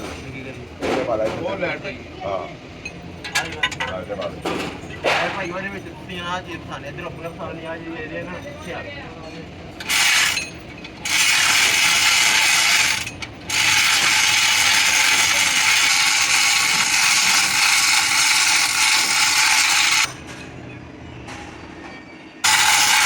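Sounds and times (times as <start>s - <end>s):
power tool rattling on metal: 9.8s - 20.1s, 22.4s - 23.0s.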